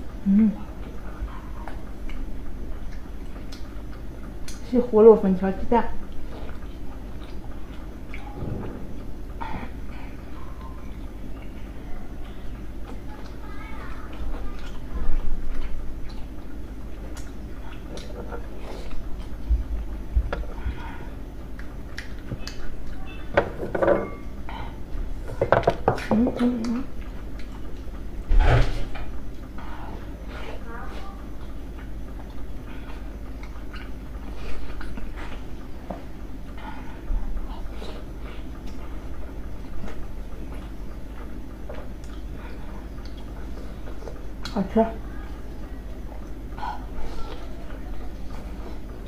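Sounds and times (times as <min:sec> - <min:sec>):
steady low hum: 0:00.0 - 0:49.0
person chewing food: 0:00.1 - 0:04.6, 0:06.1 - 0:23.1, 0:26.0 - 0:28.2, 0:29.2 - 0:44.6.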